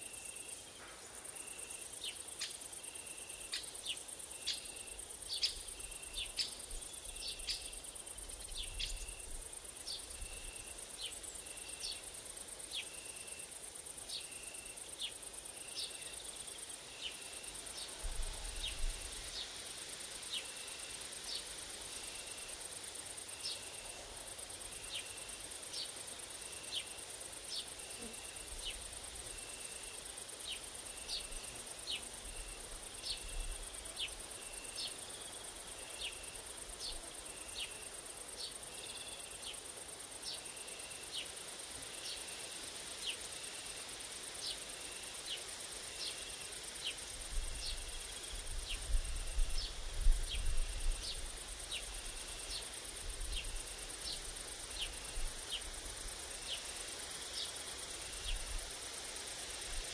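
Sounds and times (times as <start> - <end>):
cricket chirping: 0.0 - 59.9
high grasshopper and cricket trill: 0.0 - 59.9.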